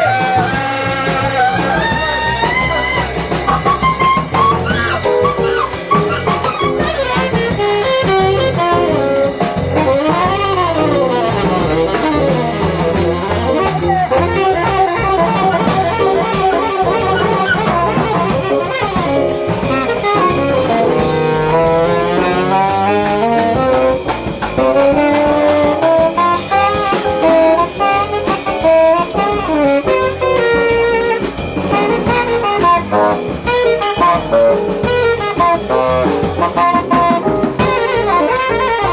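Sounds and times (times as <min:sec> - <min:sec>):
bass: 0:00.0 - 0:38.9
drum kit: 0:00.0 - 0:38.9
jazz horn solo: 0:00.0 - 0:38.9.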